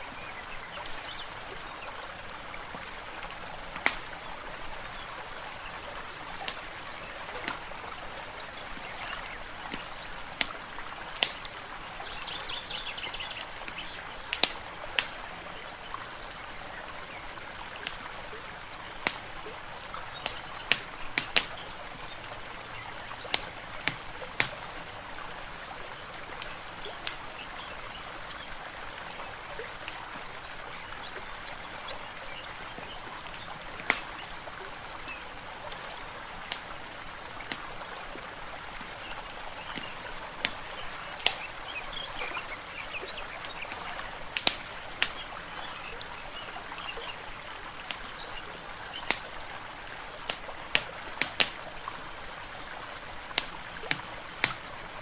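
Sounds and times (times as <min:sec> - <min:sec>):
water rushing: 0:00.0 - 0:55.0
fireplace crackling and popping: 0:02.6 - 0:12.1, 0:13.3 - 0:15.2, 0:17.6 - 0:18.0, 0:18.9 - 0:19.4, 0:20.1 - 0:21.6, 0:23.2 - 0:24.8, 0:26.3 - 0:28.1, 0:33.2 - 0:46.3, 0:47.0 - 0:51.8, 0:53.3 - 0:54.8
bird chirping: 0:39.0 - 0:44.2.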